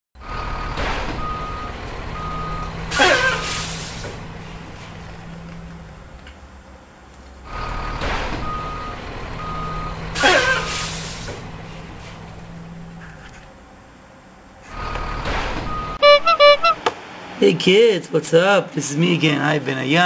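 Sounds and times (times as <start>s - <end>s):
truck reversing alarm beeping: 0.2s - 4.0s, 7.5s - 11.1s, 15.1s - 16.8s
engine running: 0.2s - 17.4s
loud burst of hiss: 2.9s - 4.2s, 10.2s - 11.4s.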